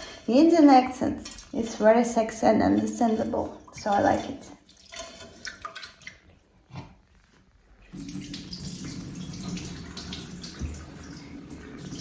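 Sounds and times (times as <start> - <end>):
faint water splashes in a bowl: 1.1 - 1.8, 2.8 - 6.5
tap water running into a bowl: 7.9 - 12.0.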